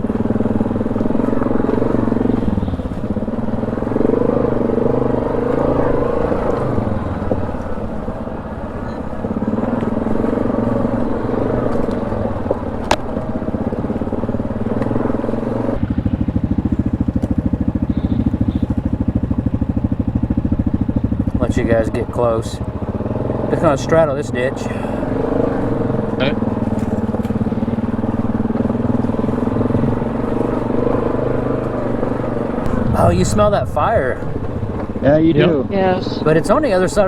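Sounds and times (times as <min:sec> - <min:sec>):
atv engine running: 0:00.0 - 0:37.0.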